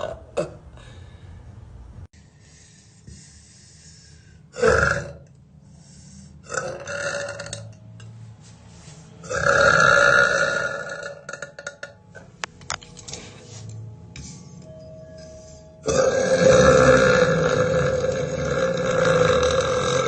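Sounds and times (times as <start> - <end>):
woman burping loudly: 0.0 - 0.7, 4.5 - 5.3, 6.4 - 7.7, 9.2 - 12.0, 15.8 - 20.0.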